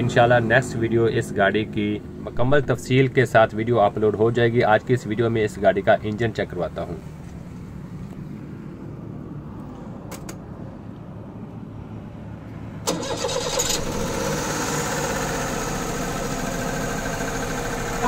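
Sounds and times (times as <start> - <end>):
engine starting and running: 12.8 - 18.0.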